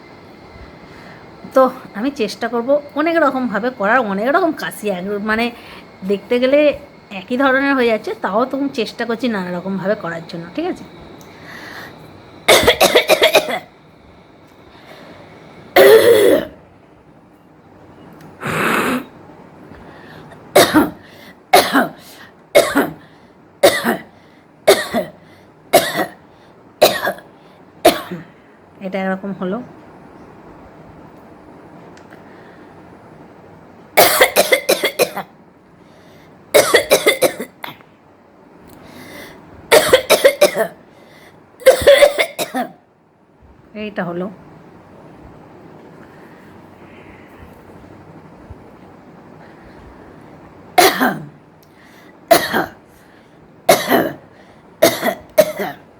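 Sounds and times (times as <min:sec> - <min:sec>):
woman coughing: 0:12.5 - 0:13.7, 0:15.8 - 0:16.6, 0:20.5 - 0:22.0, 0:22.6 - 0:23.0, 0:23.6 - 0:24.1, 0:24.7 - 0:26.2, 0:26.8 - 0:28.3, 0:34.0 - 0:35.3, 0:36.6 - 0:37.8, 0:39.7 - 0:40.8, 0:41.6 - 0:42.8, 0:50.8 - 0:51.4, 0:52.3 - 0:52.8, 0:53.7 - 0:55.9.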